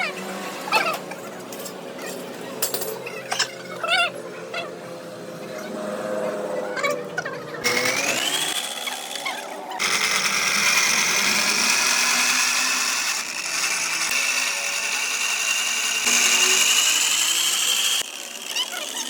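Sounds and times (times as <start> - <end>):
power tool whining: 7.6 - 19.0.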